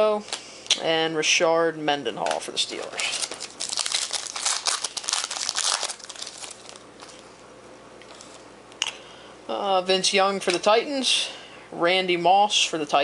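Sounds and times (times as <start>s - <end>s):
foil wrapper crinkling and tearing: 2.7s - 7.3s.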